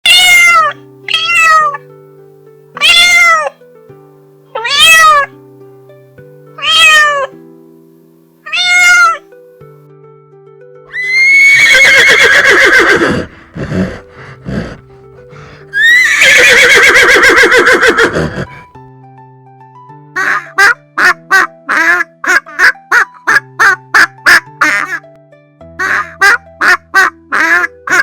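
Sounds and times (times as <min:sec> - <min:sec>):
cat meowing: 0:00.0 - 0:01.8, 0:02.8 - 0:03.6, 0:04.5 - 0:05.4, 0:06.6 - 0:07.4, 0:08.4 - 0:09.2, 0:10.9 - 0:13.9, 0:15.8 - 0:18.6
soft background music: 0:00.0 - 0:28.0
horse whinnying and snorting: 0:10.9 - 0:18.7.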